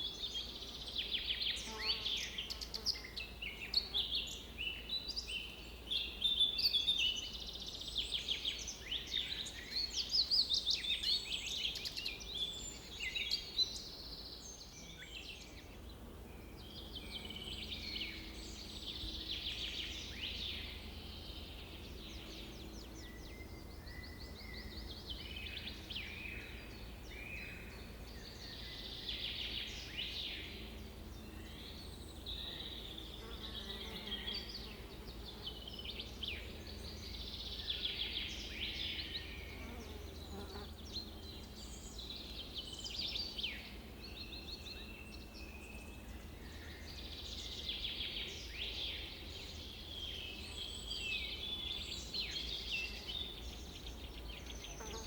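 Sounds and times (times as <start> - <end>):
birds singing and chattering: 0.0 - 55.0.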